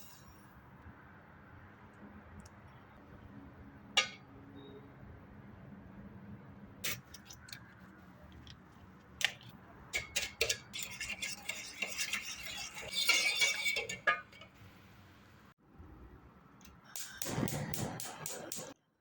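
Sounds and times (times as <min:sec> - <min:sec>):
metal utensil clinking in a bowl: 0:10.0 - 0:14.5.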